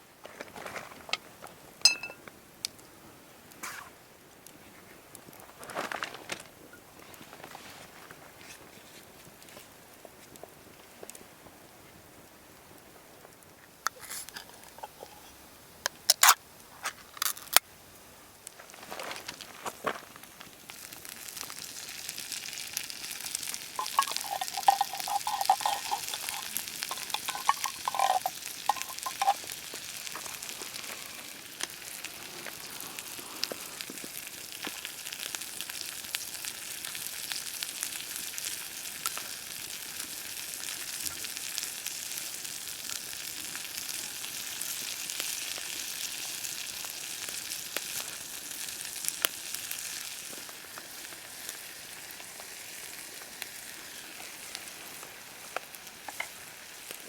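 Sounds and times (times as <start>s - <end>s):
food sizzling in a pan: 20.1s - 57.0s
stirring: 23.5s - 29.5s.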